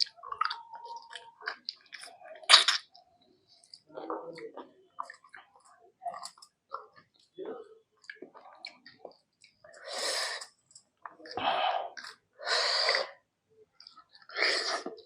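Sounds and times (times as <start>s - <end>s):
slurping marrow from a bone: 14.1s - 15.0s.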